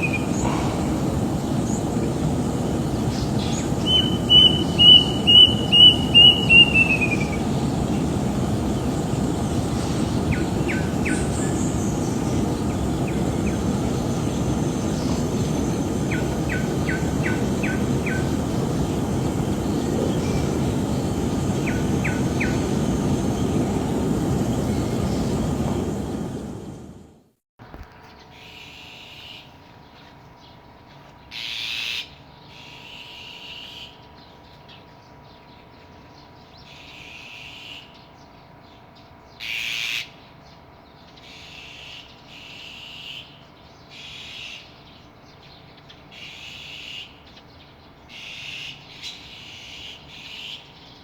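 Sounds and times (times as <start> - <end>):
bird whistling: 0.0 - 23.6
low background rush: 0.0 - 27.3.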